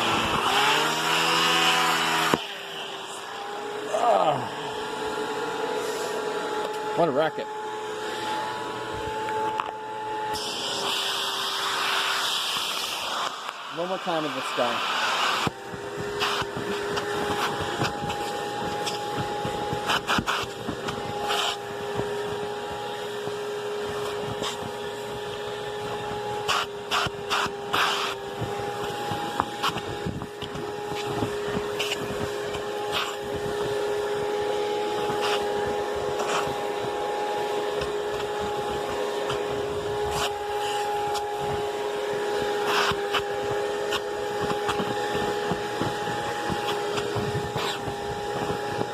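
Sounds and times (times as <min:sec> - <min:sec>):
vacuum cleaner whining: 0:00.0 - 0:48.9.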